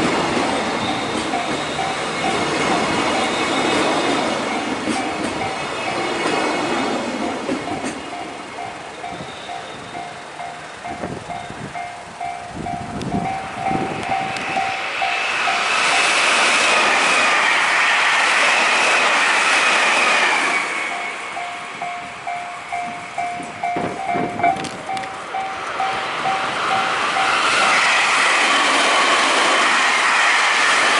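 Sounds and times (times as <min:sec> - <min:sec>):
level crossing warning bell: 0:00.0 - 0:16.3, 0:20.8 - 0:28.1
train passing at speed: 0:00.0 - 0:30.9.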